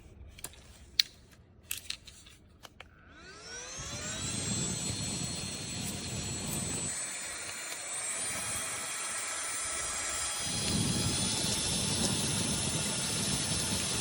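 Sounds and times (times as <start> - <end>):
small fan motor whining: 2.9 - 14.0.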